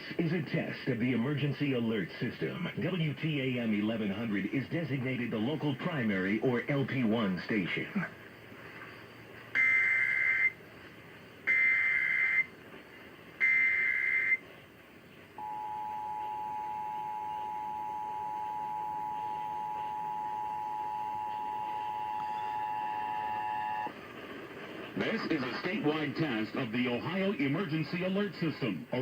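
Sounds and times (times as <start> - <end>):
two-tone attention signal: 9.6 - 10.5, 13.4 - 14.4, 15.4 - 23.9
data tone bursts: 9.6 - 10.6, 11.5 - 12.5, 13.4 - 14.4, 15.4 - 23.9.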